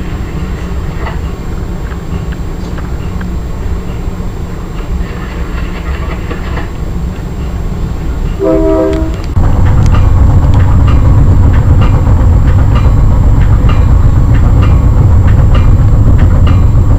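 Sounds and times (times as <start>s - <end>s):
train rumbling: 0.0s - 16.9s
wheels clicking over rail joints: 0.0s - 16.9s
train horn blast: 8.4s - 9.4s.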